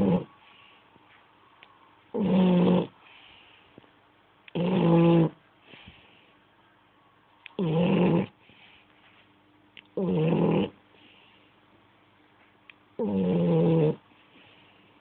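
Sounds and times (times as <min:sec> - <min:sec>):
dog snoring: 0:00.0 - 0:00.4, 0:02.1 - 0:03.0, 0:04.5 - 0:05.4, 0:07.6 - 0:08.4, 0:10.0 - 0:10.8, 0:13.0 - 0:14.1.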